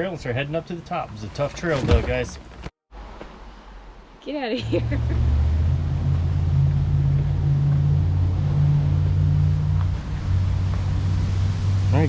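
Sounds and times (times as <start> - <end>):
low rumble with humming tones: 3.9 - 12.0.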